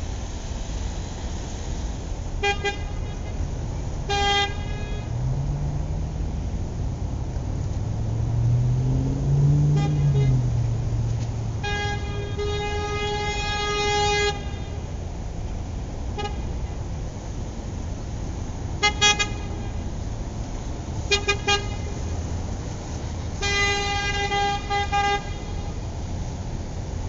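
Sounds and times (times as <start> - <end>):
low traffic rumble: 0.0 - 27.0
car horns honking: 2.4 - 5.3, 9.5 - 10.8, 11.4 - 15.0, 16.1 - 16.8, 18.8 - 20.0, 21.0 - 22.1, 23.3 - 25.8.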